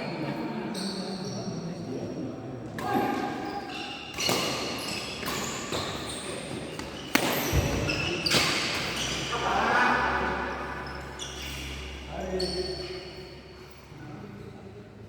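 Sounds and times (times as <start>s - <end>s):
rackets hitting shuttlecock: 4.1s - 9.2s.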